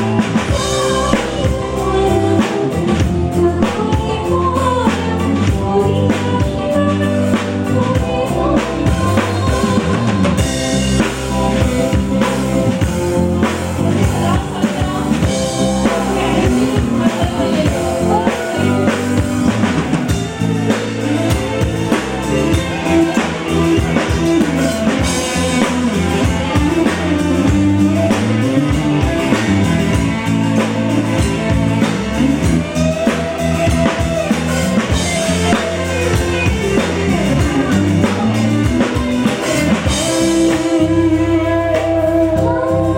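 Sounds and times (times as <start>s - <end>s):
bass drum and rimshots: 0.0s - 42.9s
live band music: 0.0s - 42.9s
person singing: 0.0s - 42.9s.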